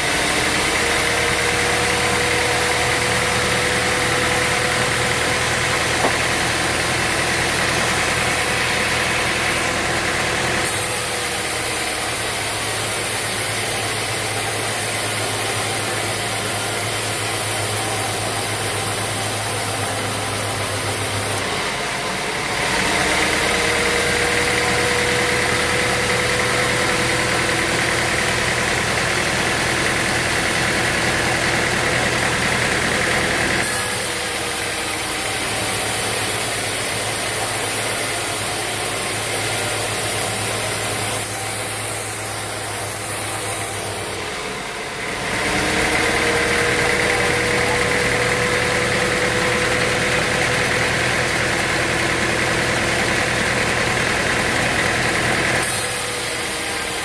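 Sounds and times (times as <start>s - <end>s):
sawmill machinery humming: 0.0s - 57.0s.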